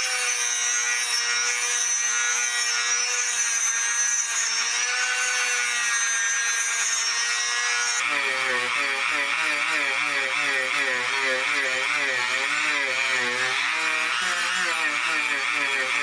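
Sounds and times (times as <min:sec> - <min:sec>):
rotary tool high whine: 0:06.6 - 0:16.0.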